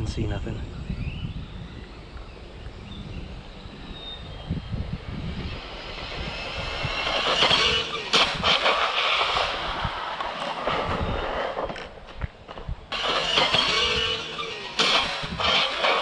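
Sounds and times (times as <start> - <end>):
electric motor and tyres rushing: 0.0 - 16.0
sharp crack: 5.6 - 16.0.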